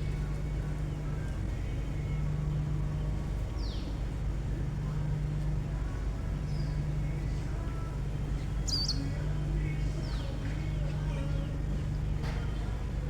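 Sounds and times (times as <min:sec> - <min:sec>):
songbird chirps: 0:02.0 - 0:04.3, 0:06.3 - 0:12.6.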